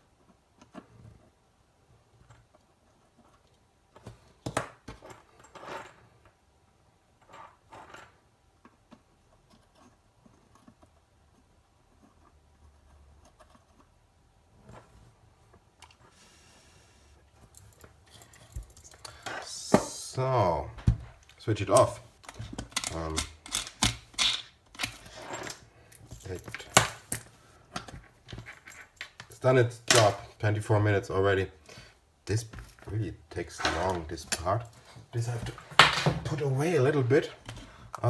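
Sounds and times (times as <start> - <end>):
tools clicking and knocking: 17.5 - 19.4, 20.8 - 30.3, 32.5 - 36.4.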